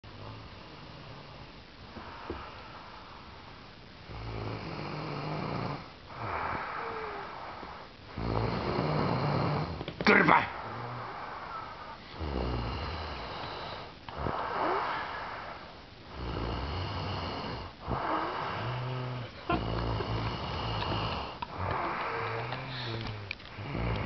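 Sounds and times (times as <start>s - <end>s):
man snoring: 4.1s - 9.9s, 10.5s - 24.0s.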